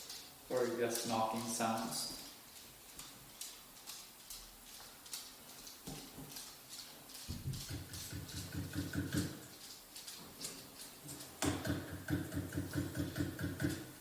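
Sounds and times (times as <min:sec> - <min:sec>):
rapid knocking on a door: 0:07.3 - 0:09.4, 0:11.4 - 0:13.9.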